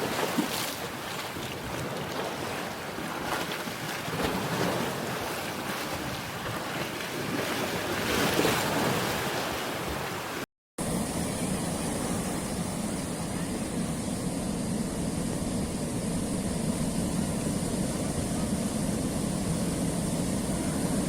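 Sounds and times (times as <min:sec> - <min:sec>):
sea waves on rocky shore: 0:00.0 - 0:10.4.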